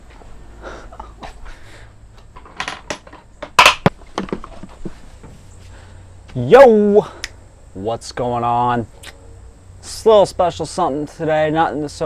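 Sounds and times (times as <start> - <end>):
small metallic clattering knocks: 2.3 - 5.0.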